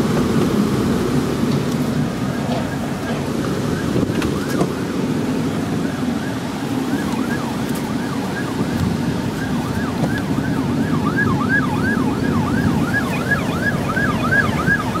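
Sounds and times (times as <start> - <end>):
vehicle and wind rumble: 0.0 - 15.0
siren in fast yelp: 5.7 - 15.0.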